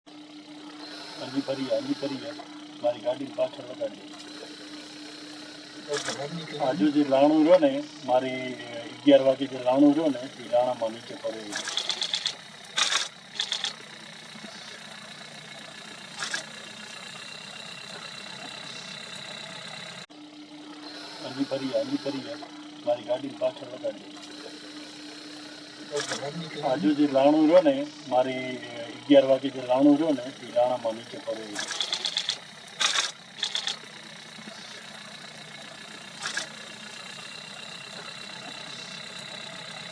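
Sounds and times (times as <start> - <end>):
vehicle engine idling: 0.2 - 39.9
rapid clicking: 4.0 - 7.6, 8.5 - 20.1, 28.5 - 39.9
high rattling bursts: 8.2 - 20.1, 28.2 - 39.9.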